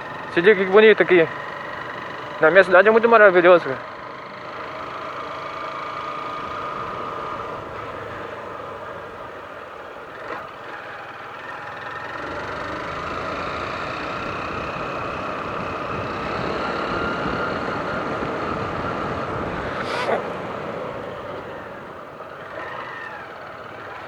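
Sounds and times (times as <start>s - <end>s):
motorcycle engine running: 0.0s - 24.0s
wind on microphone: 17.2s - 20.3s.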